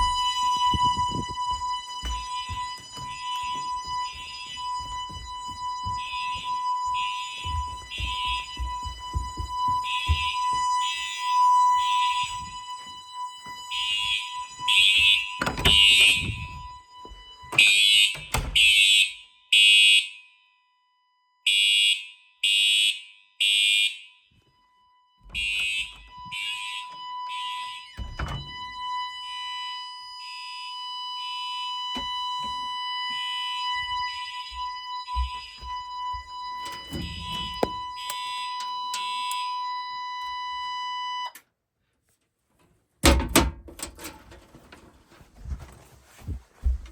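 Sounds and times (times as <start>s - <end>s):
low handling thumps: 0.0s - 10.8s
steady high tone: 0.0s - 16.7s
fire alarm beeps: 0.0s - 41.5s.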